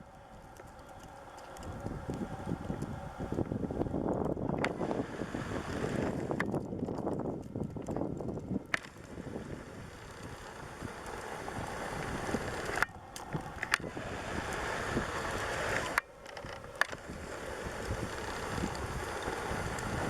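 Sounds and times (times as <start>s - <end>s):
wind blowing across microphone: 0.0s - 20.0s.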